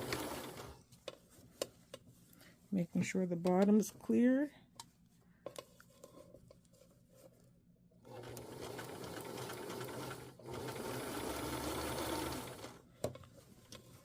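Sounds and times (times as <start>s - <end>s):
sewing machine running: 0.0s - 0.8s, 8.1s - 12.8s.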